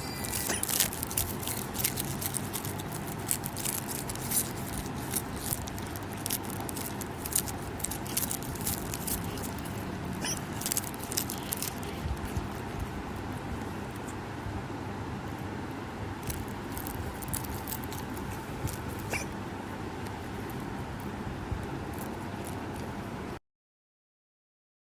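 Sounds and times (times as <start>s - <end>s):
pet chewing crunchy food: 0.1s - 14.0s, 16.2s - 19.4s.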